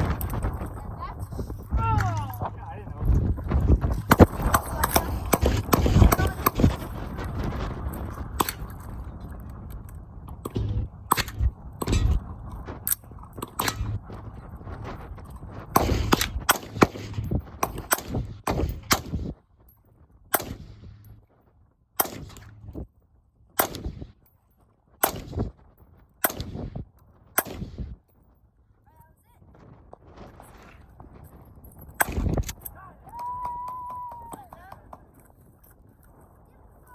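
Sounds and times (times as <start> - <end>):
gunshots: 3.8 - 7.0, 13.5 - 14.0, 15.7 - 19.3, 20.3 - 21.0, 22.0 - 22.7, 23.6 - 24.1, 25.0 - 25.5, 26.2 - 26.8, 27.4 - 27.9
steady background rush: 10.3 - 19.4.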